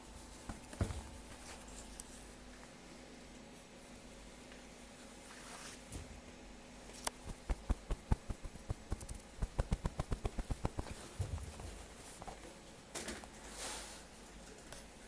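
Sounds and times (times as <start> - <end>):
puppy paws pattering on hard floor: 7.1 - 12.5.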